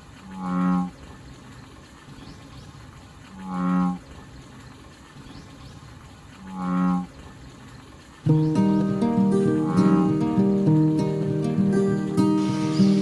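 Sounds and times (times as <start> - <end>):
low bowed string note: 8.3 - 13.0.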